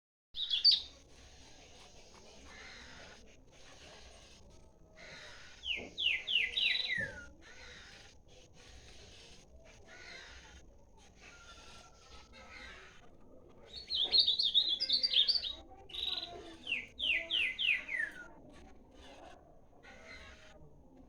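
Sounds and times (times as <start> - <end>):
bird singing high chirps: 0.4 - 0.9, 5.6 - 7.3, 13.7 - 18.3.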